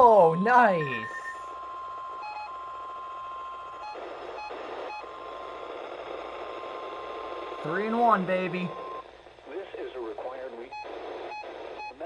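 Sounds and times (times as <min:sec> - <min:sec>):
high alert tone: 0:00.0 - 0:01.5
faint radio hiss: 0:05.6 - 0:11.8.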